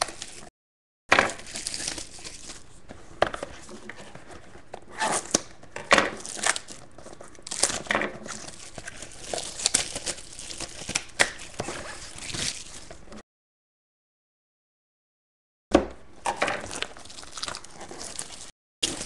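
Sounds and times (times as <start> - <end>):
plastic wrapping crinkling and tearing: 1.3 - 2.7, 6.2 - 13.0, 16.6 - 19.0.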